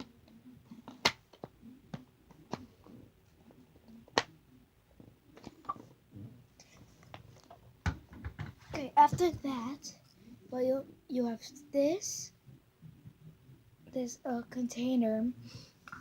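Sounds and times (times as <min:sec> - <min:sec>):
faint handling noise: 0:00.0 - 0:10.2.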